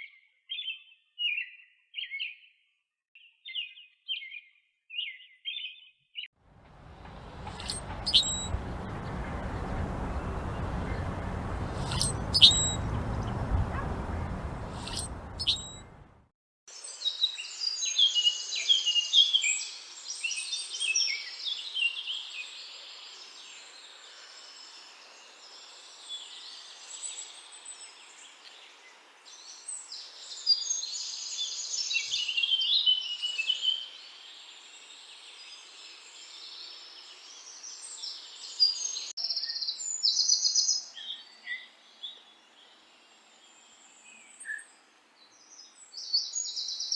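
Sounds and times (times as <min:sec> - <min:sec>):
rushing noise: 0:06.5 - 0:16.3
songbirds chirping and trilling: 0:06.6 - 0:16.1.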